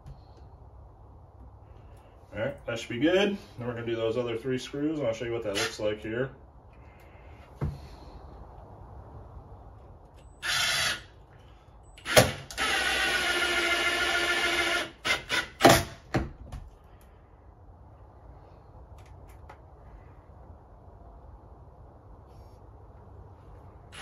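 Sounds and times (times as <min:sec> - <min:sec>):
power drill driving screws: 0:10.4 - 0:11.1, 0:12.0 - 0:16.0.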